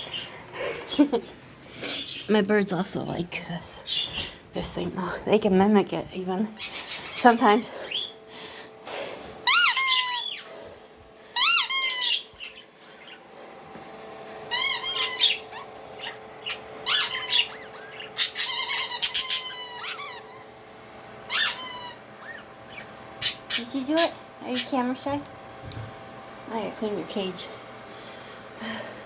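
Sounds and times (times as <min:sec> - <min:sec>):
budgies chirping faintly: 0:00.0 - 0:08.6, 0:09.4 - 0:13.6, 0:14.4 - 0:25.2
squeeze toy squealing: 0:09.5 - 0:10.4, 0:11.4 - 0:12.2, 0:21.3 - 0:22.4.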